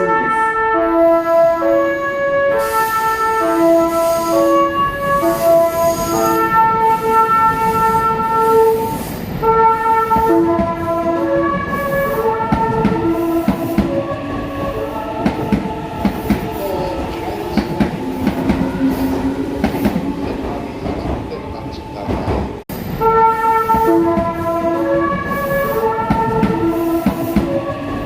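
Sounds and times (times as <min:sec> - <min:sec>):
train musical horn: 0:00.0 - 0:22.1, 0:23.0 - 0:28.0.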